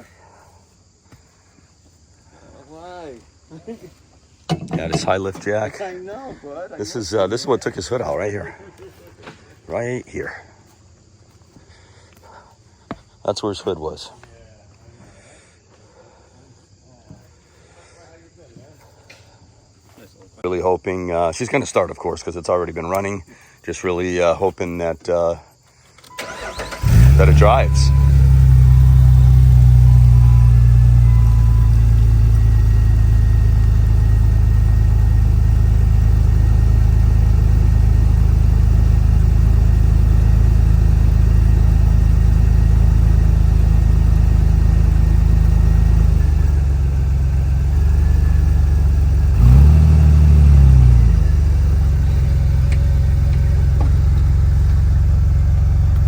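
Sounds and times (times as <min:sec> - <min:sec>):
car engine idling and revving: 0:26.1 - 0:56.0.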